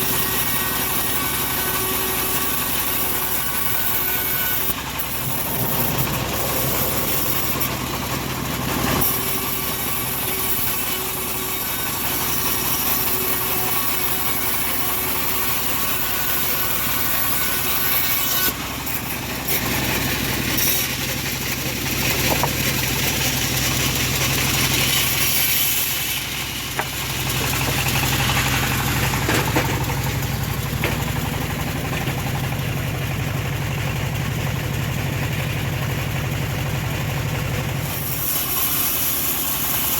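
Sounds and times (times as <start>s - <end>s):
engine running steadily: 0.0s - 17.9s, 18.5s - 39.9s
bandsaw blade cutting wood: 0.0s - 33.4s, 37.6s - 39.9s.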